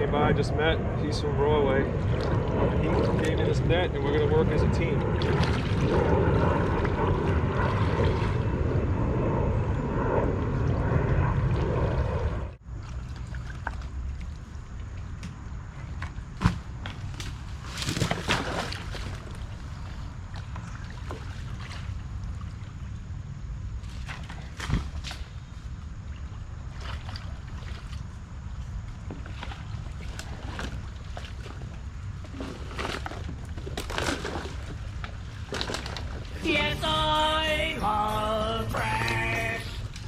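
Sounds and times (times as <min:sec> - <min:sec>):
shallow river water running: 0:00.0 - 0:09.0, 0:10.4 - 0:40.0.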